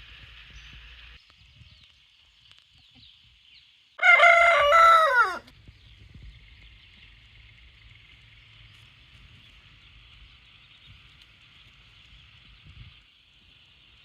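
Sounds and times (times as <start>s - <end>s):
rooster crowing: 4.0s - 5.5s.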